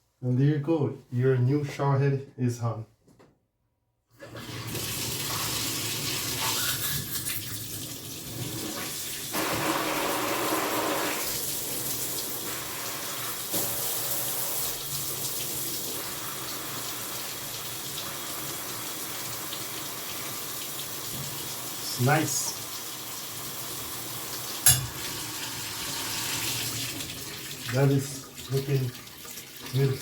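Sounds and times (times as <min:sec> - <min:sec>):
shower water spraying: 0:08.3 - 0:22.6, 0:23.2 - 0:30.0.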